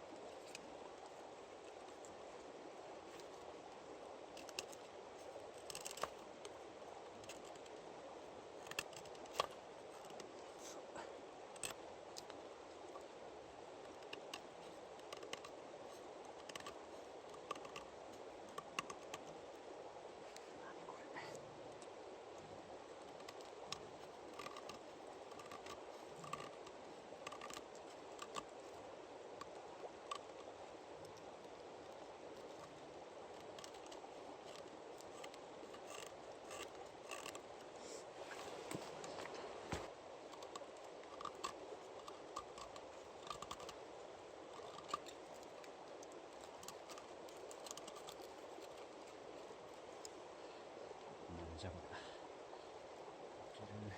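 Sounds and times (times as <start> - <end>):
steady low hiss: 0.0 - 53.9
small clicks and taps: 4.4 - 4.9, 5.5 - 6.6, 8.6 - 10.4, 11.5 - 13.1, 13.8 - 17.9, 18.5 - 19.4, 23.0 - 28.8, 29.4 - 37.7, 38.4 - 43.8, 44.5 - 50.2.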